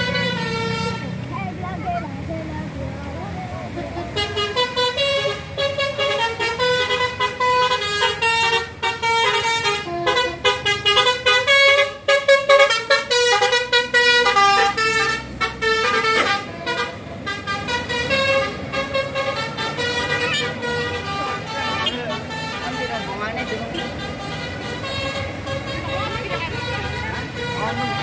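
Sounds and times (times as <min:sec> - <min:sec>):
bus melody horn: 0:00.0 - 0:01.3, 0:03.7 - 0:28.0.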